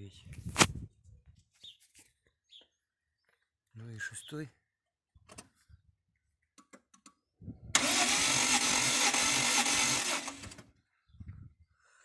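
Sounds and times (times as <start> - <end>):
engine cranking by starter: 7.8 - 10.7.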